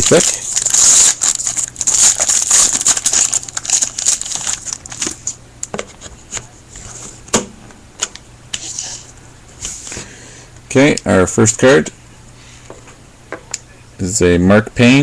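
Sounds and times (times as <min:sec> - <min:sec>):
wrapper crinkling and tearing: 0:00.0 - 0:05.4.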